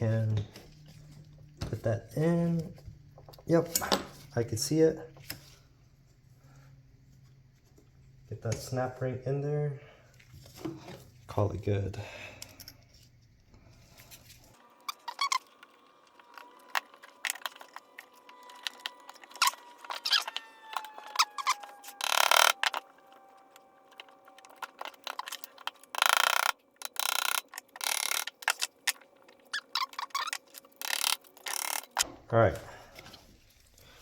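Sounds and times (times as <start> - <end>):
small metal clicks: 16.1 - 32.1.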